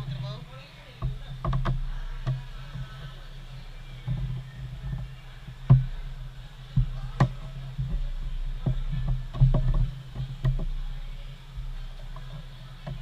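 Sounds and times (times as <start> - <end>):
steady low hum: 0.0 - 13.0
sharp clicks and knocks: 1.0 - 3.0.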